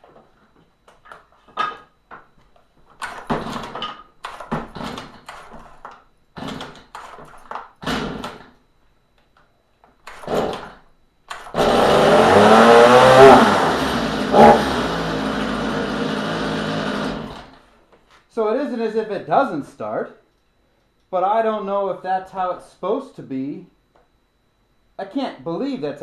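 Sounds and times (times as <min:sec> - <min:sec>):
chainsaw engine running: 0:11.5 - 0:17.5.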